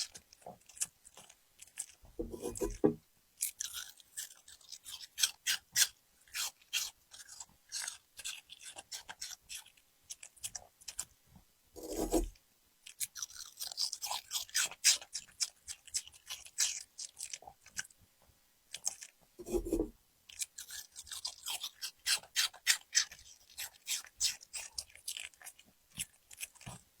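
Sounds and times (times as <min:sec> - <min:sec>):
puppy crunching food: 0:00.0 - 0:11.2, 0:11.8 - 0:18.0, 0:18.7 - 0:26.9.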